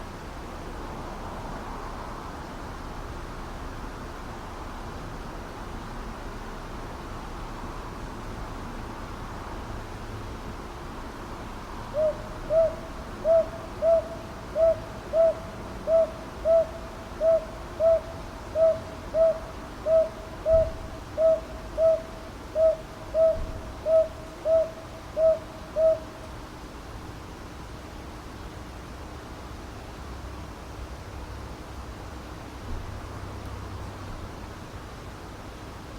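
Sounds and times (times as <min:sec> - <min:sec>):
background hiss: 0:00.0 - 0:35.9
owl hooting: 0:11.9 - 0:26.2.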